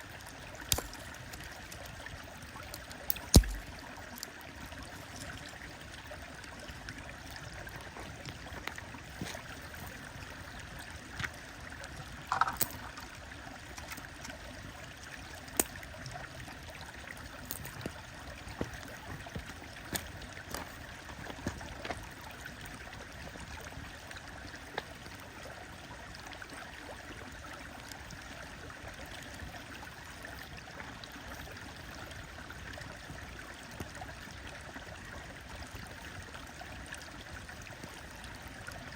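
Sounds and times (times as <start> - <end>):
campfire crackling and popping: 0.0 - 2.0, 2.6 - 4.4, 12.3 - 13.2, 15.4 - 15.9, 17.4 - 22.0
flowing stream: 0.0 - 38.9.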